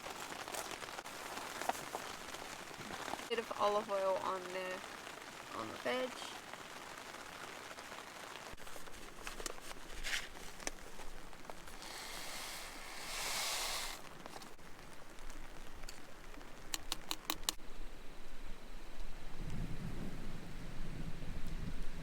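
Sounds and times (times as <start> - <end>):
hiss: 11.6 - 14.5.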